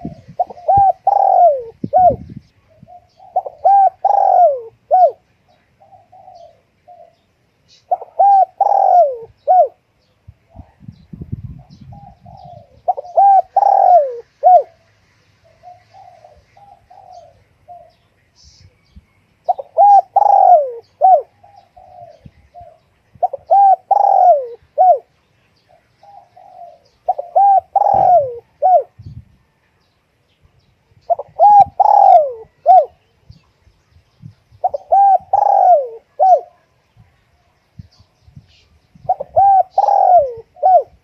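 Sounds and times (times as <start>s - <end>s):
dove cooing: 0.0s - 9.8s, 11.5s - 18.0s, 19.5s - 25.1s, 25.7s - 29.2s, 31.1s - 33.0s, 34.6s - 36.7s, 39.0s - 41.0s.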